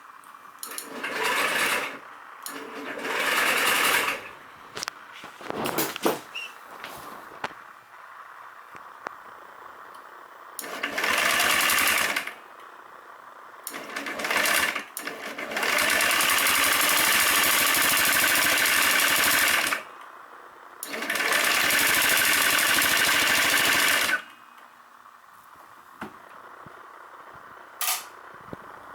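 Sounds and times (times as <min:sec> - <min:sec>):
scooter starter cranking engine: 0:00.6 - 0:04.4, 0:10.6 - 0:12.4, 0:13.7 - 0:19.9, 0:20.8 - 0:24.3
fast clicking clatter from engine: 0:13.7 - 0:19.8, 0:20.8 - 0:24.2.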